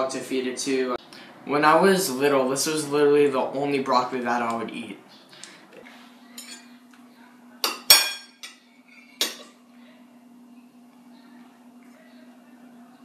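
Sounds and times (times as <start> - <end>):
faint steady hum: 0.0 - 13.0
cutlery clinking against dishes: 6.4 - 6.7, 7.6 - 9.6.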